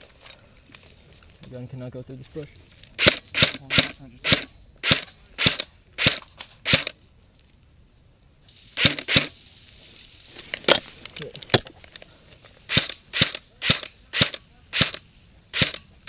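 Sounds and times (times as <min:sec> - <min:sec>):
airsoft gun shots: 0:03.0 - 0:07.0, 0:08.8 - 0:09.4, 0:12.7 - 0:15.8.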